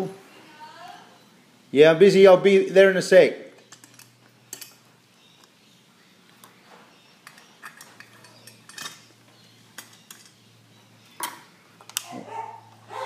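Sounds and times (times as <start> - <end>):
metal parts clinking: 3.6 - 4.8, 7.2 - 10.4.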